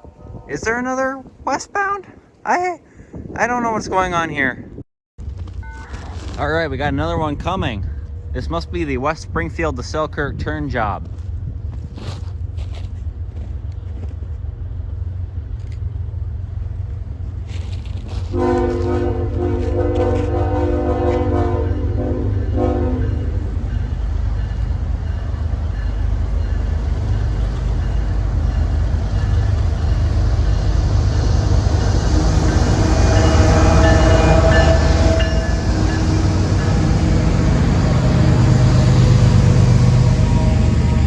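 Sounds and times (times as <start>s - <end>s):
diesel train rumble: 5.2s - 41.0s
rail noise: 5.2s - 41.0s
train horn chord: 18.2s - 25.2s, 27.8s - 41.0s.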